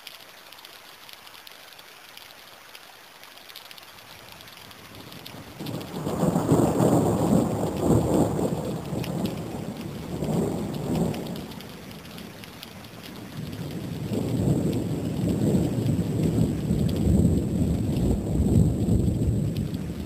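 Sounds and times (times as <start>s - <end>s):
rain falling: 0.0s - 20.0s
thunder rumbling: 4.8s - 20.0s.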